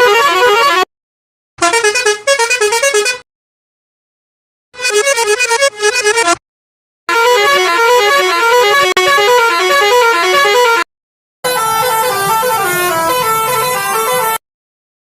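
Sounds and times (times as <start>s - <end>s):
musical bus horn tune: 0.0s - 0.9s, 1.6s - 3.3s, 4.8s - 6.4s, 7.1s - 14.4s.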